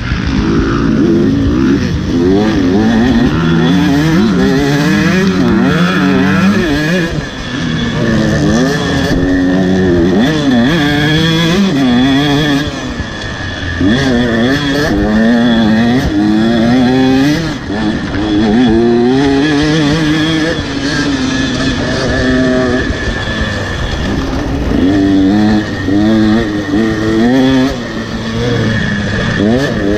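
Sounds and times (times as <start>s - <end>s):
dirt bike engine revving: 0.0s - 29.9s.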